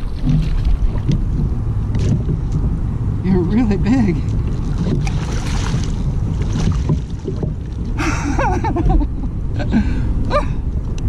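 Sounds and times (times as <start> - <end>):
fish splashing water: 0.0 - 2.5, 4.2 - 8.1
wind rumble on microphone: 0.0 - 11.0.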